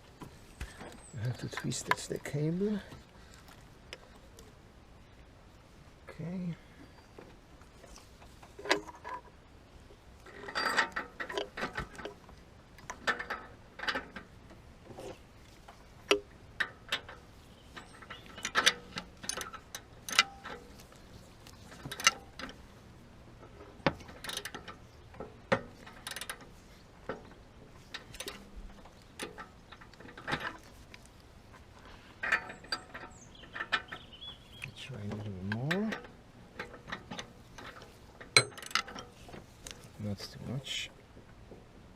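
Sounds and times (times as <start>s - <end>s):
hand tools clicking on metal: 17.8s - 22.6s.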